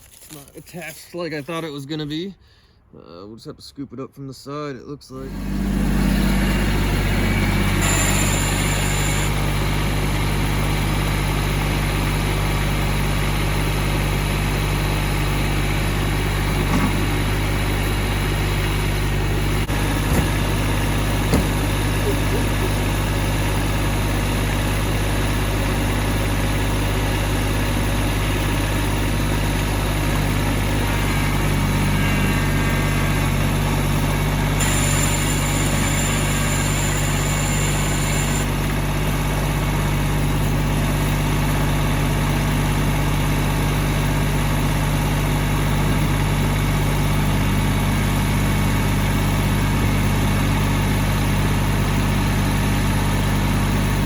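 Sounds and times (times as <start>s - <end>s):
high whine: 5.2s - 39.0s
loader engine running: 5.2s - 54.0s.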